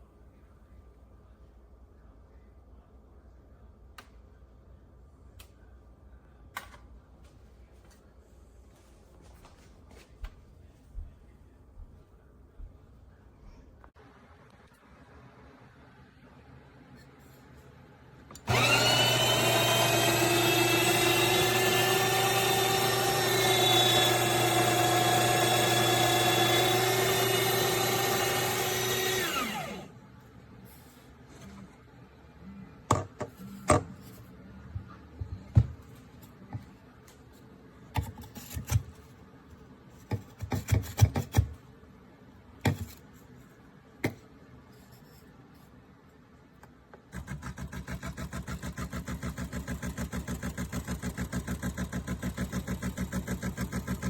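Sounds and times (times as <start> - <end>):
grinder motor whining: 18.4 - 29.9.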